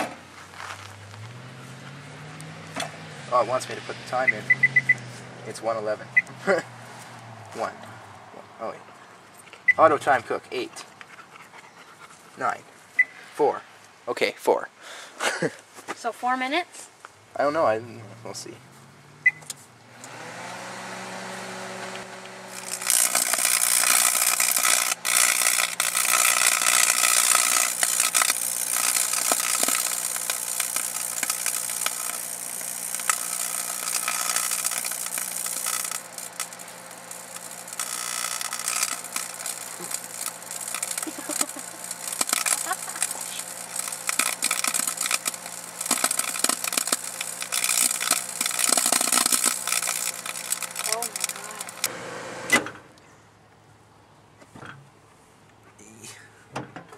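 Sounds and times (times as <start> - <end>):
microwave oven humming: 20.0 - 52.6
sparks crackling and popping: 22.5 - 51.9.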